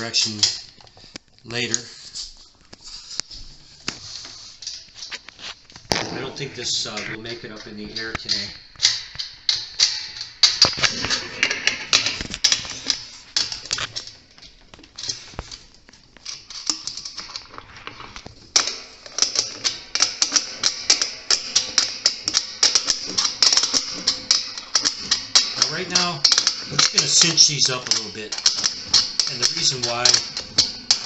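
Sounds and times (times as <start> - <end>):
wrench clicking on metal nuts: 7.3 - 15.3, 18.6 - 31.0.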